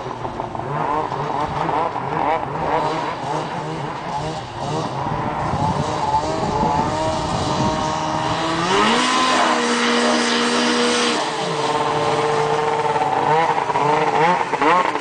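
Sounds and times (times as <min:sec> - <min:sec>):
snowmobile engine revving: 0:00.0 - 0:15.0.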